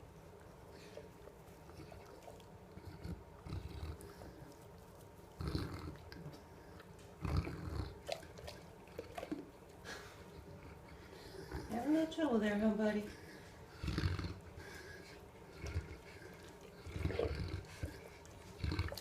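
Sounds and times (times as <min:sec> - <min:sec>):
dog burping: 0:05.4 - 0:06.3, 0:07.2 - 0:09.5, 0:13.7 - 0:14.8, 0:15.4 - 0:19.0.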